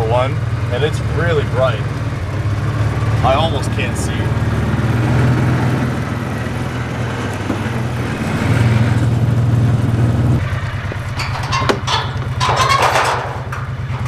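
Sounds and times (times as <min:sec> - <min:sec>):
vehicle engine running: 0:00.0 - 0:14.0
short knocks or rattles: 0:10.4 - 0:14.0.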